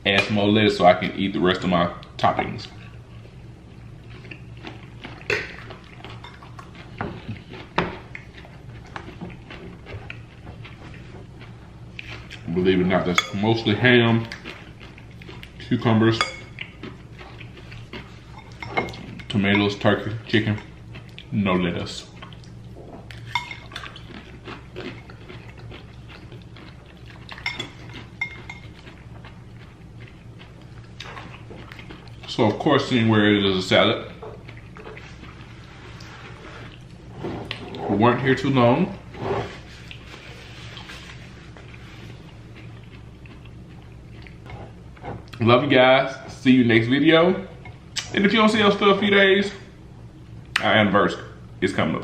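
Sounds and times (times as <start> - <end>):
steady low hum: 0.0 - 52.0
utensils clinking on a plate: 13.1 - 13.4, 18.3 - 19.8, 27.3 - 28.9
cutlery clinking against a dish: 27.3 - 28.8.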